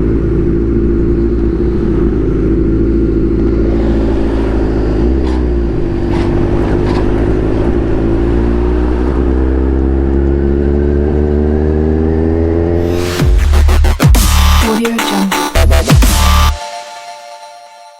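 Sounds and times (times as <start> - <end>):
motorcycle engine accelerating: 0.0 - 14.6
electronic dance music: 12.8 - 17.9.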